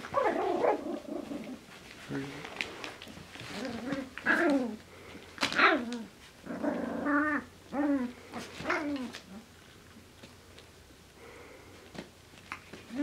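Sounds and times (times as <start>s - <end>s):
puppies growling and yapping: 0.0s - 2.0s, 2.8s - 9.8s.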